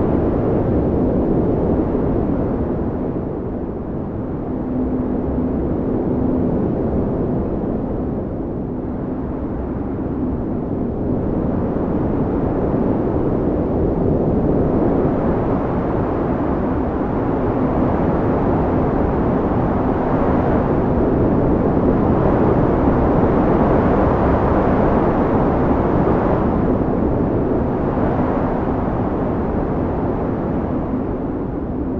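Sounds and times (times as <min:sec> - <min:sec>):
faint hum: 0:00.0 - 0:31.9
wind noise: 0:00.0 - 0:31.9.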